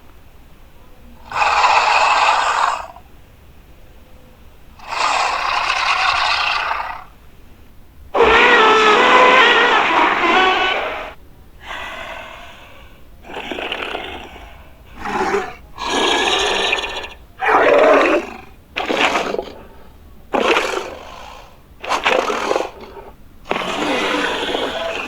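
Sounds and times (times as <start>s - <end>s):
monster roars and growls: 8.2s - 19.6s, 20.3s - 25.0s.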